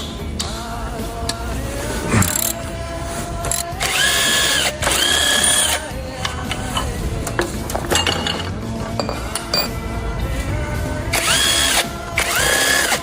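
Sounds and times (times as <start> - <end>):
power tool whining: 1.9 - 2.7, 3.4 - 5.9, 11.1 - 13.0
metal clatter: 6.2 - 9.8.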